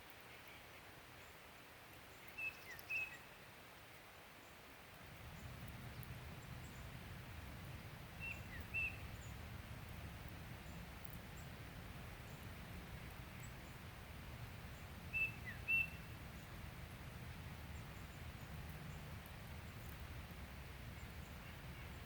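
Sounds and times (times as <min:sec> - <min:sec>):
small bird chirping: 0:02.1 - 0:03.3, 0:08.1 - 0:09.5, 0:14.7 - 0:16.6.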